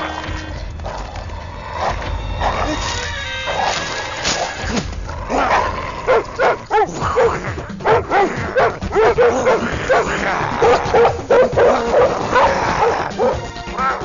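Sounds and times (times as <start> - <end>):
dog barking: 5.5 - 13.4.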